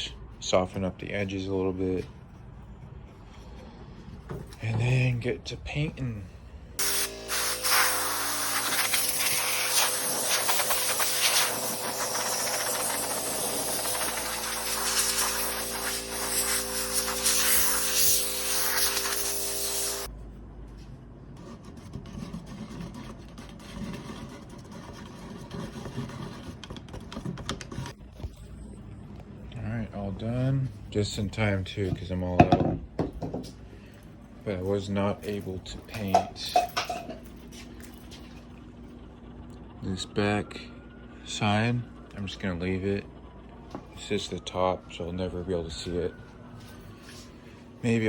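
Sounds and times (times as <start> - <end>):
aerosol spray can hissing: 6.8 - 20.1.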